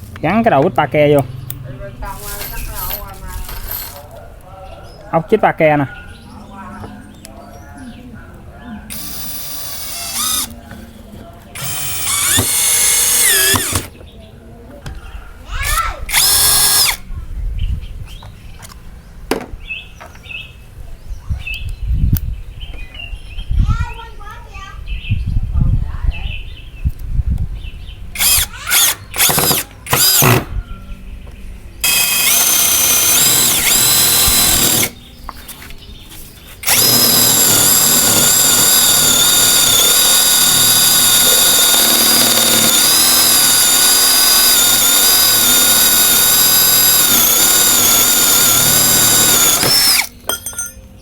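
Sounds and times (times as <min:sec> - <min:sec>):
cordless drill motor whining: 0:02.1 - 0:04.0, 0:08.9 - 0:10.6, 0:11.6 - 0:13.9, 0:15.6 - 0:17.0, 0:28.2 - 0:30.5, 0:31.8 - 0:35.0, 0:36.6 - 0:50.2.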